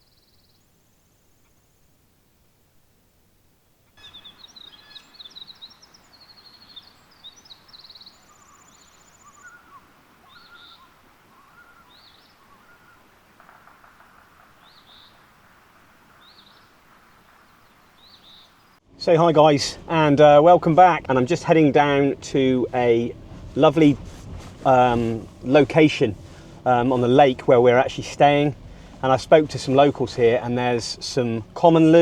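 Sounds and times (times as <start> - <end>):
birds chirping and trilling: 4.0 - 13.1, 14.6 - 15.2, 16.2 - 20.1.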